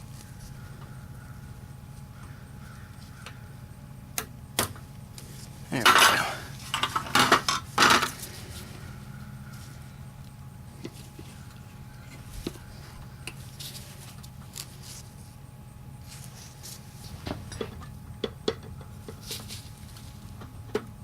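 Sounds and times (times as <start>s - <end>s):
steady low hum: 0.0s - 21.0s
clinks of metal parts and tools: 5.8s - 8.1s.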